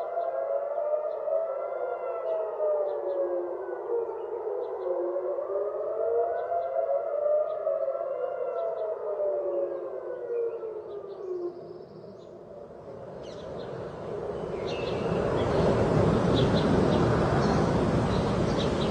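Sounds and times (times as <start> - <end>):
air-raid sirens wailing: 0.0 - 11.5, 12.2 - 18.9
rush of outdoor noise: 12.5 - 18.9.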